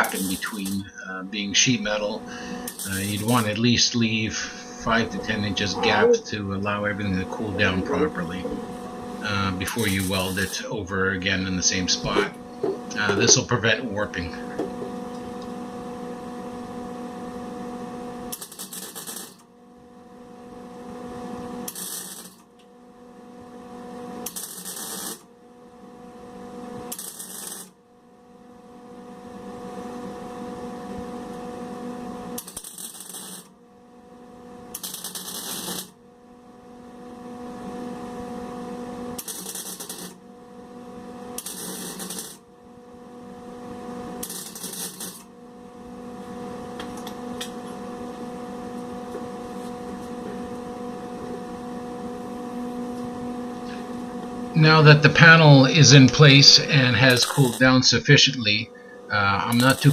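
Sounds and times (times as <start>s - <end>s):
welder arc crackling: 0.0s - 15.6s, 18.2s - 19.5s, 21.6s - 22.7s, 24.2s - 25.3s, 26.8s - 27.8s, 32.3s - 33.5s, 34.7s - 36.0s, 39.1s - 40.2s, 41.2s - 42.6s, 44.0s - 50.1s, 52.4s - 59.9s
steady low hum: 0.0s - 59.9s.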